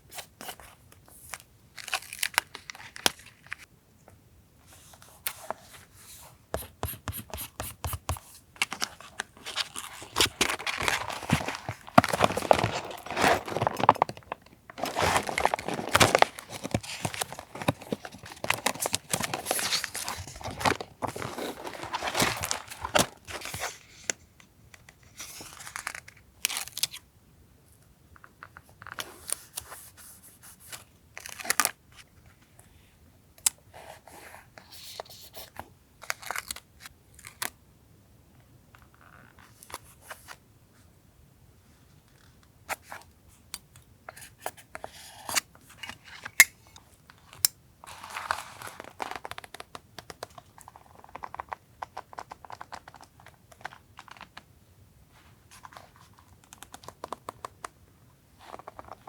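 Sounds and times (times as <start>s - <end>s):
paper rustles and taps: 6.6s - 23.6s
paper tearing and crinkling: 9.4s - 23.6s.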